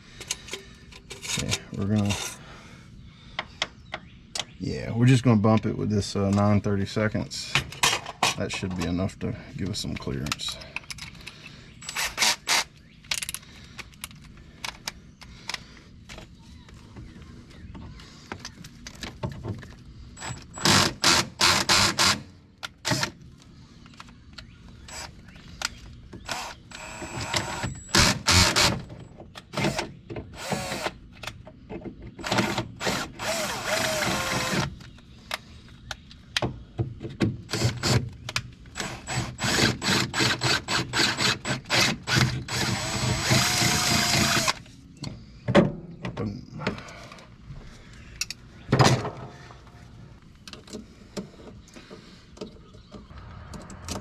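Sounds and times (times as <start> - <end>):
power drill drilling sheet metal: 11.8 - 12.7, 20.2 - 22.2, 26.3 - 28.9, 32.3 - 34.7, 38.8 - 44.6.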